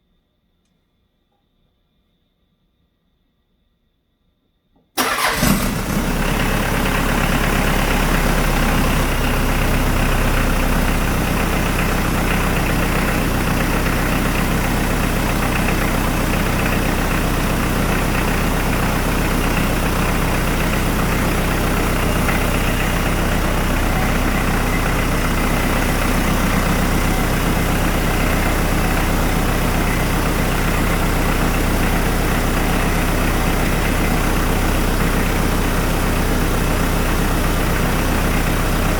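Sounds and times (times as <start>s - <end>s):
diesel engine idling: 5.0s - 38.9s.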